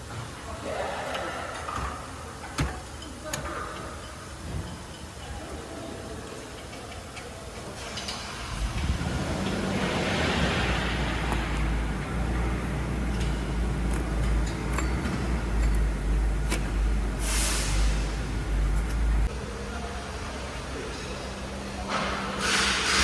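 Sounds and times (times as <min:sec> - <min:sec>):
engine low rumble: 0:07.8 - 0:23.0
brief hiss: 0:17.2 - 0:18.0.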